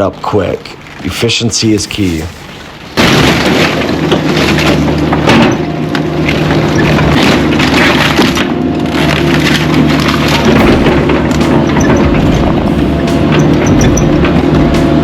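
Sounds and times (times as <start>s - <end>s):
debris cracking and crunching: 2.6s - 15.0s
excavator diesel engine running: 3.5s - 15.0s.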